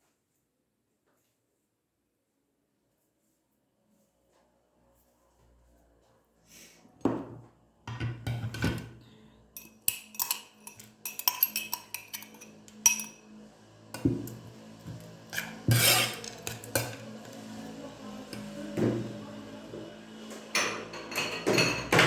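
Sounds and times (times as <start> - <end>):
kitchen utensils and dishes clinking: 7.9 - 9.0, 9.6 - 13.4, 14.0 - 17.4, 20.4 - 22.0.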